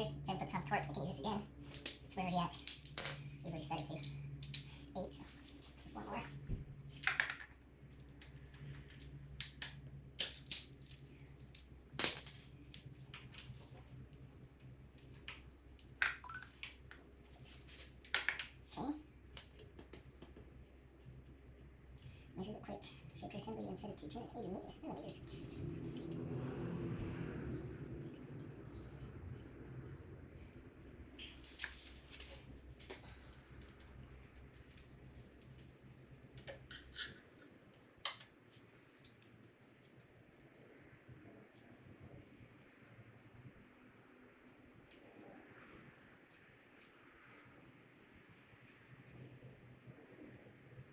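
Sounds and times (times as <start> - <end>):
low steady hum: 0.0 - 50.9
hand tools clicking and rattling: 0.6 - 5.6.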